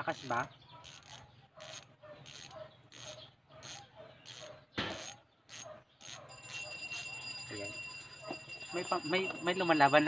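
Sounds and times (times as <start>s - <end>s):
bicycle hub freewheel ratcheting: 0.0s - 7.3s
sharp knock: 4.8s - 5.1s.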